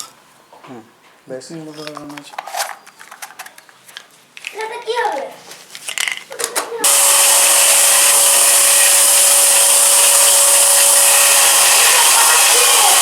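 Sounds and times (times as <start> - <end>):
thin steady whine: 6.8 - 13.0
vacuum cleaner motor blowing: 6.8 - 13.0.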